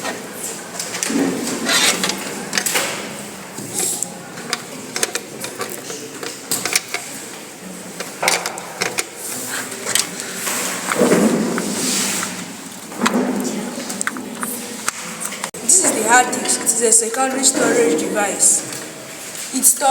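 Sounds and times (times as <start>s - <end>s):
computer parts clicking and knocking: 0.9s - 3.1s, 3.7s - 7.2s, 8.0s - 9.2s.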